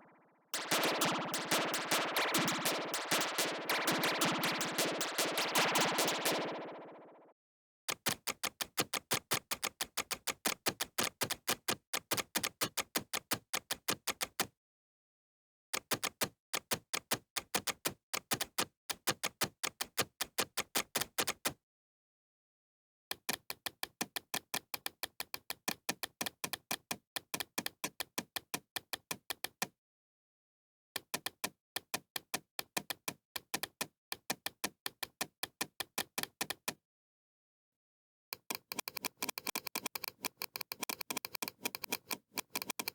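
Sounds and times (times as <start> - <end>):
rapid mouse clicks: 0.6 - 7.0, 7.9 - 14.5, 15.8 - 21.6, 38.4 - 42.9.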